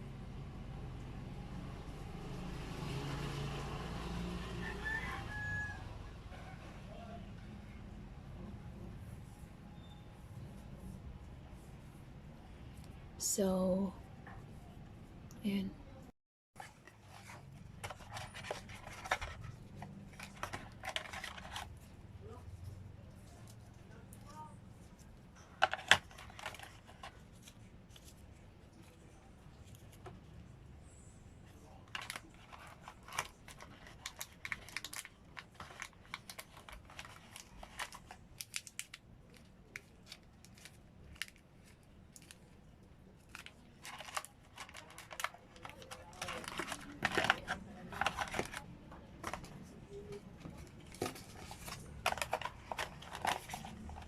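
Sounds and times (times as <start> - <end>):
packaging rubbing and scraping: 16.6 - 23.8, 24.8 - 30.0, 31.8 - 54.0.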